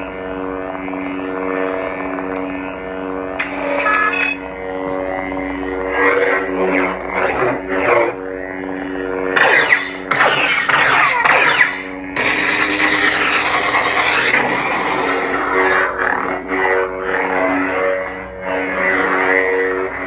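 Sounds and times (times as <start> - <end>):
lightsaber humming drone: 0.0 - 20.0
lightsaber swing sounds: 3.4 - 8.2, 9.3 - 17.3.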